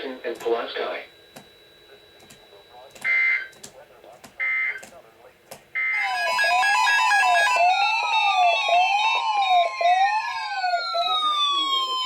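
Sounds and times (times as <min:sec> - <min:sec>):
electronic siren tone sweeping: 0:05.8 - 0:12.0
steady beeping tones: 0:05.8 - 0:12.0.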